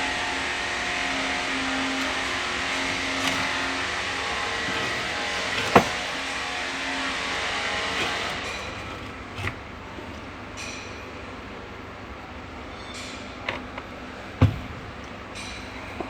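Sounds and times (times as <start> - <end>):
grinder cutting: 0.1 - 9.7.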